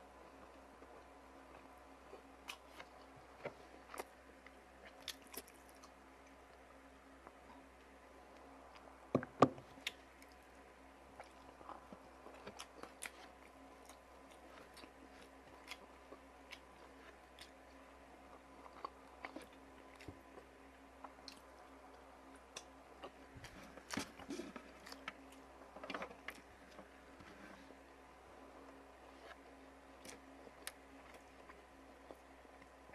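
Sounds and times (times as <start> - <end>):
person chewing: 11.1 - 27.6, 28.6 - 32.8.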